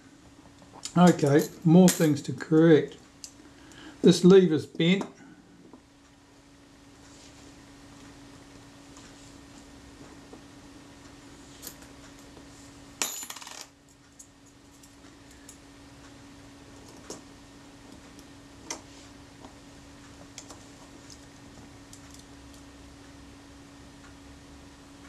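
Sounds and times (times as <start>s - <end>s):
faint hum: 0.0s - 25.0s.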